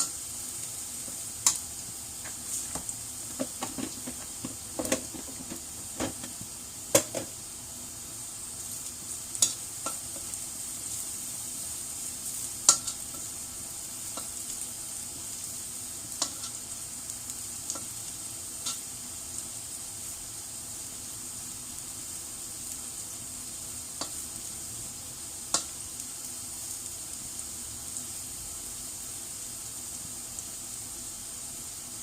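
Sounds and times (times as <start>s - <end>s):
garlic sizzling in oil: 0.0s - 32.0s
utensil knocking against pan: 3.3s - 6.4s.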